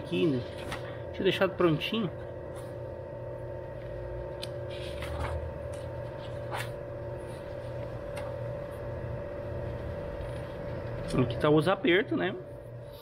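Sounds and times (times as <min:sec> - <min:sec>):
steady electrical hum: 0:00.0 - 0:13.0
paper pages rustling: 0:04.6 - 0:08.4.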